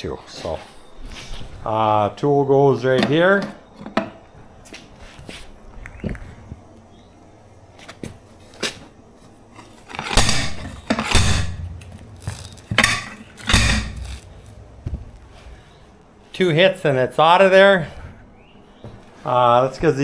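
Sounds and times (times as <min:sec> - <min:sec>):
light metal knocks: 0:09.9 - 0:15.8
loud metal strikes: 0:09.9 - 0:16.0.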